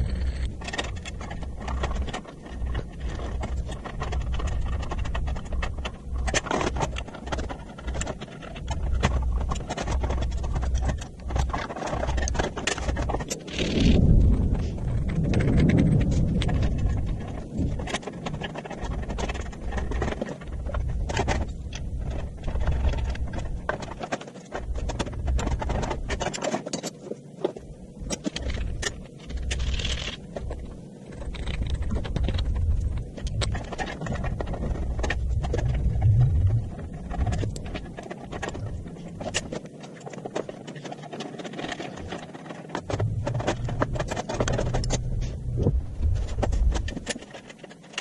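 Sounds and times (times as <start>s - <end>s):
low rumble: 0.0s - 6.3s, 12.2s - 23.8s, 30.4s - 39.4s, 42.8s - 47.1s
quick clicks clanks and scrapes: 0.0s - 48.0s.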